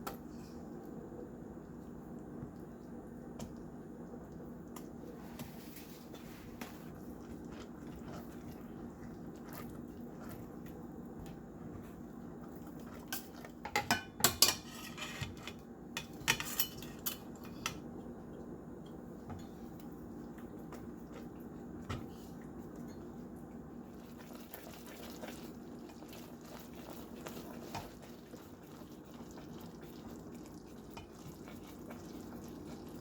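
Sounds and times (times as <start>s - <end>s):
metal utensils clinking on cookware: 13.2s - 15.3s, 16.0s - 17.3s.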